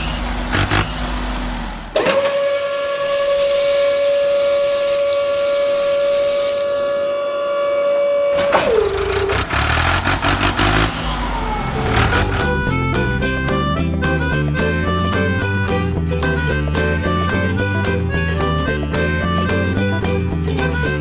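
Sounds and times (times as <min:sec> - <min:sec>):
steady horn-like tone: 0:02.2 - 0:09.8
music: 0:11.7 - 0:21.0.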